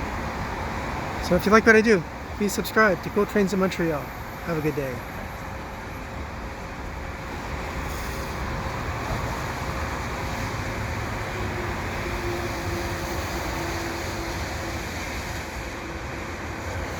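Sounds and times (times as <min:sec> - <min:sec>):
vehicle noise rumble and hiss: 0:00.0 - 0:16.9.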